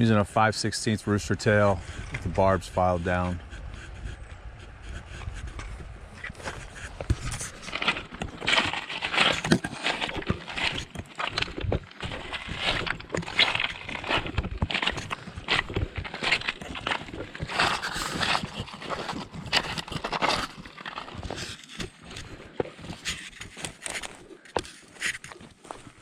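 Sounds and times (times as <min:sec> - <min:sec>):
knocks clacks and rustling: 0:05.6 - 0:25.9.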